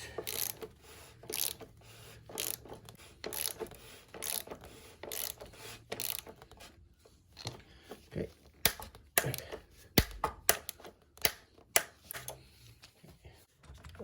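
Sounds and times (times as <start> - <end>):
torque wrench ratchet clicks: 0.2 - 0.6, 1.3 - 1.6, 5.1 - 5.4, 6.0 - 6.2.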